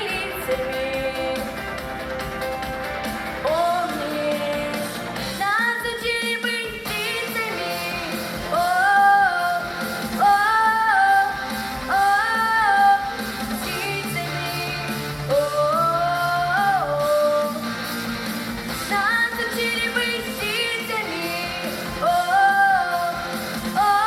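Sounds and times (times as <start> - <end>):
woman singing: 0.0 - 1.9, 3.4 - 17.8, 18.8 - 24.0
instrumental accompaniment: 0.0 - 24.0.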